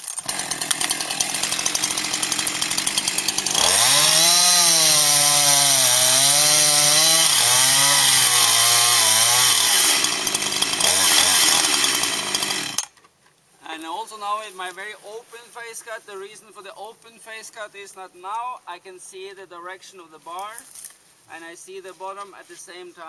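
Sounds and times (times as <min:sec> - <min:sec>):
chainsaw cutting into tree: 0:00.0 - 0:12.9.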